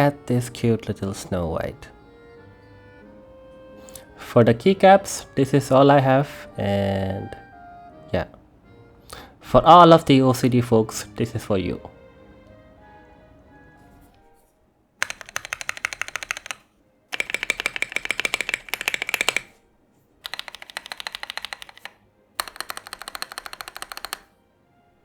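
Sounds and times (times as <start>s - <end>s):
mechanical keyboard typing: 15.0s - 19.6s, 20.2s - 24.3s.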